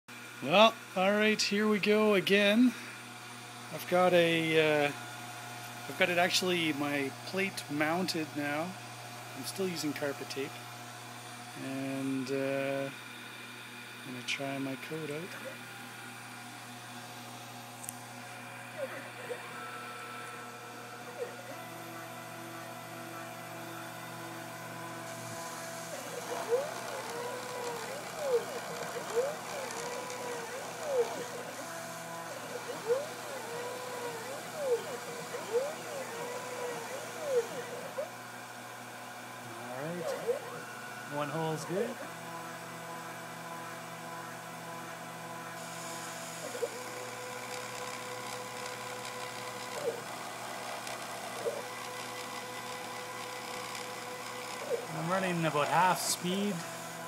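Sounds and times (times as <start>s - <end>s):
cnc machine motor hum: 0.2s - 57.0s
stepper motors whining: 14.8s - 57.0s.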